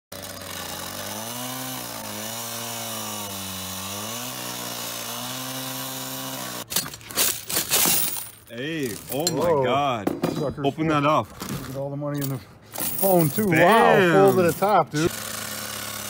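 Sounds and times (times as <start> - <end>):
gas-powered saw cutting metal: 0.1 - 6.8, 13.9 - 16.0.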